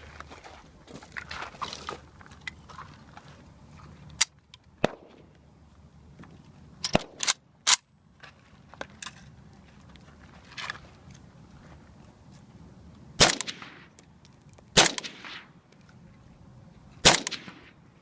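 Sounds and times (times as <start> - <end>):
rifle shots: 4.8 - 5.2, 6.9 - 7.8, 13.2 - 14.0, 14.8 - 15.6, 17.0 - 17.8.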